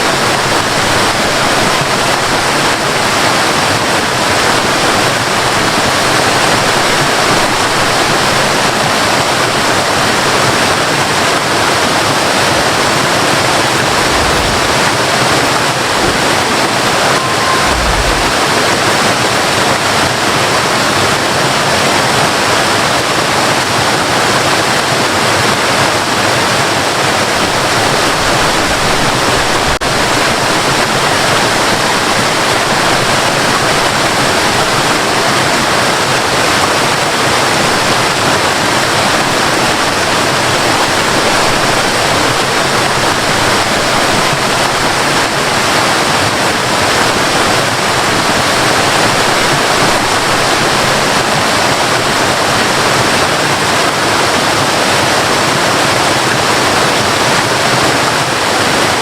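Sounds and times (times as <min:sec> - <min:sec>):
waterfall rushing and splashing: 0:00.0 - 0:59.0.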